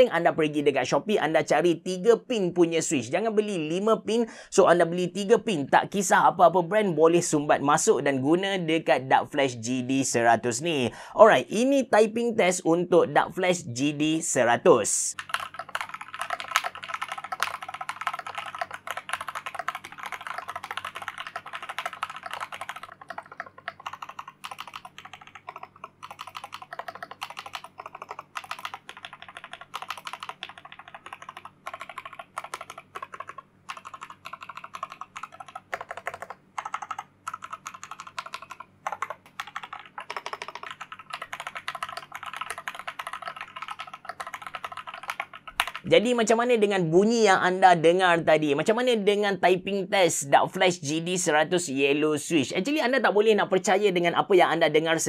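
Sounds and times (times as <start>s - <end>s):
fast typing on mechanical keyboard: 15.1s - 46.3s.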